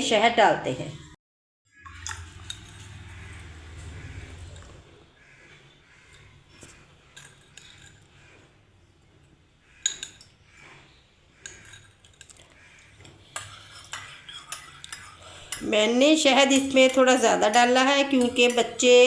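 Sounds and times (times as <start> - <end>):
spoon clinking against a cup: 9.8 - 10.4, 11.4 - 12.4, 13.3 - 19.0.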